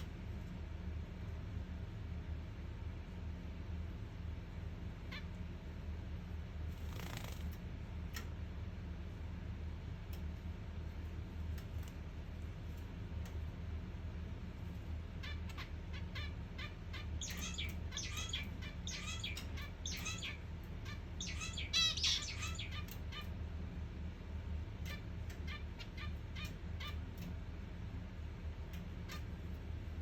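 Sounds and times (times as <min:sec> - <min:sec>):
steady low hum: 0:00.0 - 0:30.0
finches calling: 0:15.2 - 0:23.3.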